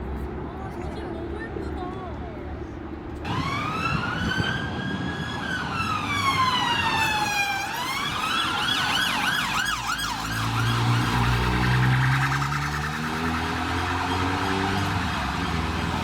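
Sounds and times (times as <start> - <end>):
emergency vehicle siren: 3.2 - 16.0.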